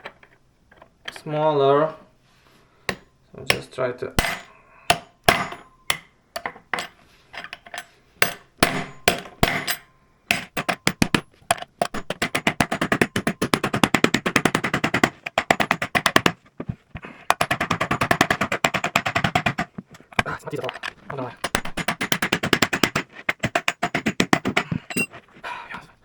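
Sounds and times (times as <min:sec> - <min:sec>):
hammer striking a punch: 0:02.9 - 0:06.1, 0:08.2 - 0:16.4.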